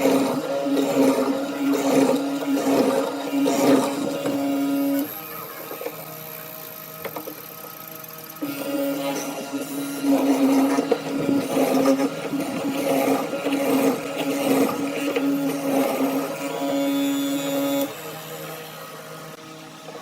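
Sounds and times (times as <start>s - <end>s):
rough rasping on wood: 0.0s - 5.0s, 9.3s - 17.6s
power tool motor whine: 0.0s - 20.0s.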